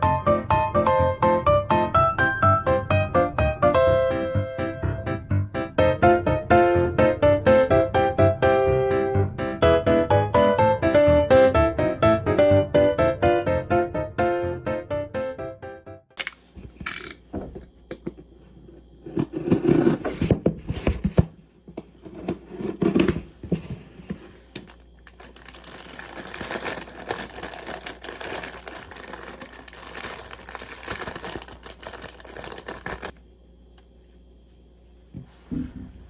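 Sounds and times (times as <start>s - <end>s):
material crinkling and rustling: 23.0s - 33.3s.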